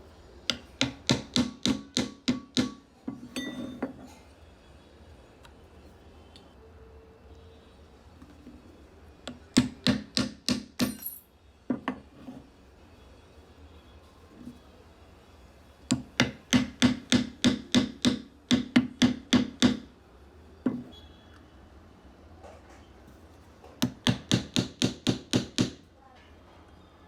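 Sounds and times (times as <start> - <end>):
mallet knocking on wood: 0.5 - 2.8, 15.9 - 19.9, 23.8 - 25.8.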